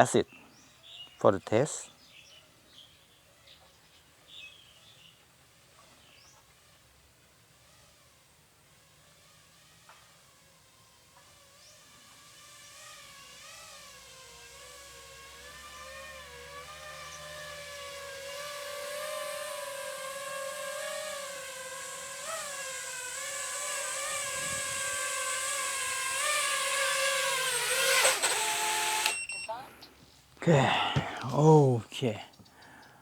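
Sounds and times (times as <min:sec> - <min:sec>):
drone motors and propellers whining: 0:04.8 - 0:29.8.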